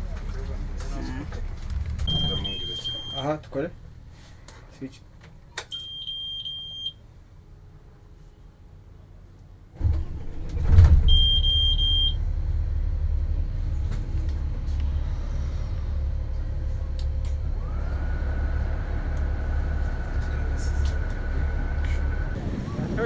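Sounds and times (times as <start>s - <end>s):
diesel engine starting and idling: 0.0s - 4.3s, 9.7s - 23.0s
steady high whine: 1.9s - 3.7s
dashboard chime beeps: 2.1s - 3.3s.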